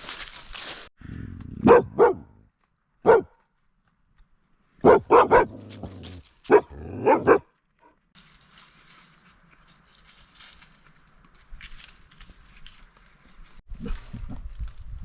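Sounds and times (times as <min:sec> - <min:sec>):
rustle: 0:00.0 - 0:00.9, 0:05.4 - 0:07.0, 0:08.2 - 0:15.0
dog barking: 0:01.6 - 0:02.4, 0:03.0 - 0:03.4, 0:04.8 - 0:05.7, 0:06.5 - 0:07.5.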